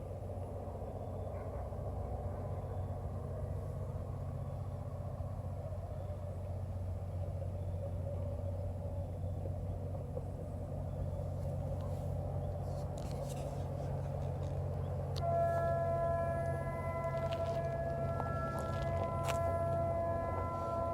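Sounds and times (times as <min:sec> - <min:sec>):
diesel locomotive engine drone: 0:00.0 - 0:20.9
locomotive air horn chord: 0:15.1 - 0:20.9.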